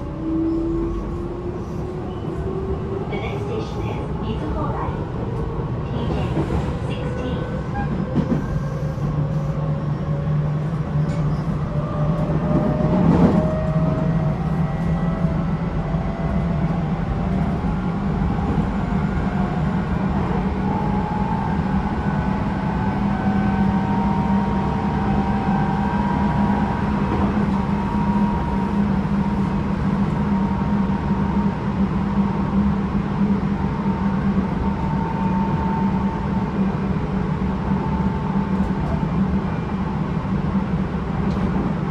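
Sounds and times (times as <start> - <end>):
train wheel rumble: 0.0 - 41.9.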